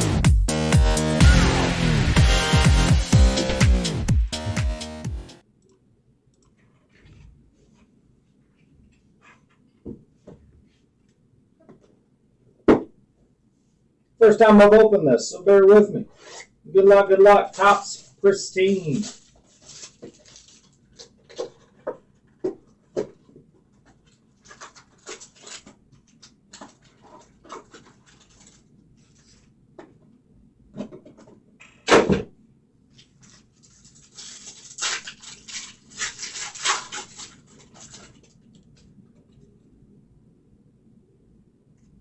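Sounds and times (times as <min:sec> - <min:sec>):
wrapper crinkling and tearing: 0:18.9 - 0:21.8, 0:24.0 - 0:29.4, 0:32.9 - 0:38.8.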